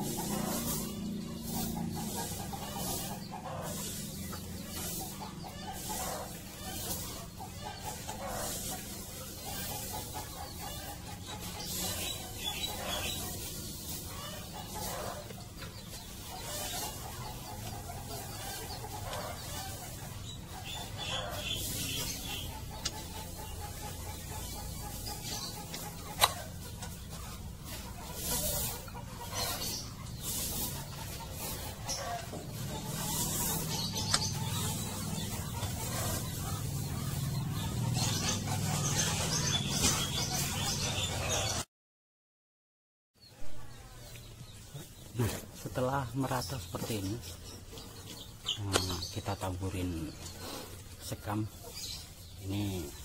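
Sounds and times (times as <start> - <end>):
rustling: 0.0 - 37.3
chickens clucking: 0.0 - 41.7, 43.2 - 53.0.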